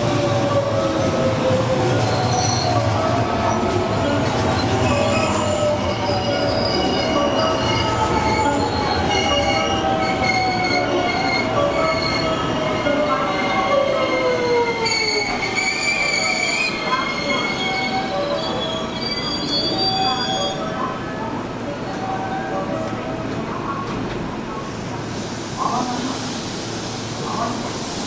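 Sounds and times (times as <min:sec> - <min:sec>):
rail noise: 0:00.0 - 0:28.0
wheel and brake squeal: 0:14.1 - 0:20.6.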